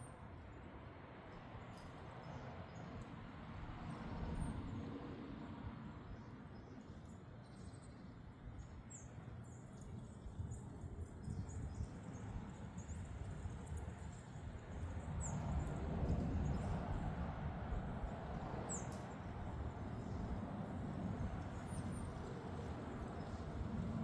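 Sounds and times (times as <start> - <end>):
wind on microphone: 10.0 - 24.0.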